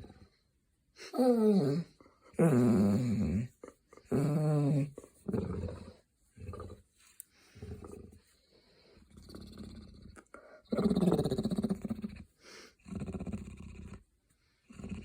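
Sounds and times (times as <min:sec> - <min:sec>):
hound dog grumbling: 0:01.1 - 0:06.8, 0:09.2 - 0:12.2.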